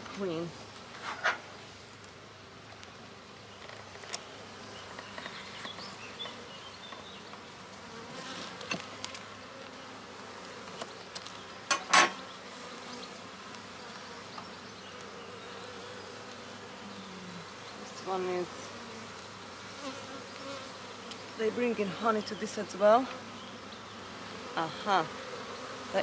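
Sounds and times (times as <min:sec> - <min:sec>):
honey bees buzzing: 0:00.0 - 0:26.0.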